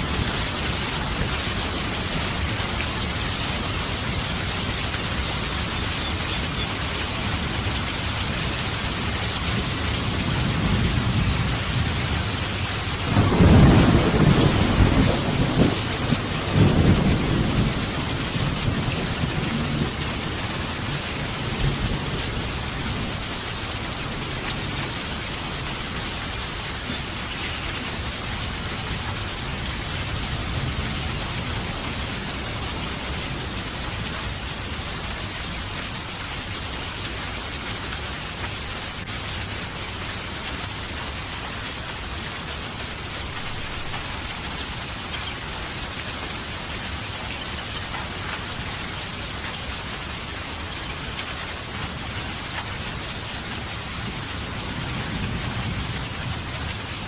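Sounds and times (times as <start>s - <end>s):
thunder rumbling: 0.0s - 27.0s, 54.0s - 57.0s
heavy rain: 0.0s - 57.0s.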